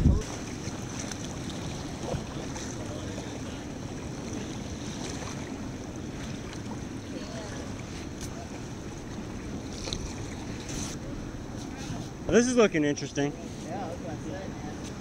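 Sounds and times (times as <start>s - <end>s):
river water rushing: 0.0s - 10.7s
wind buffeting microphone: 0.0s - 10.7s.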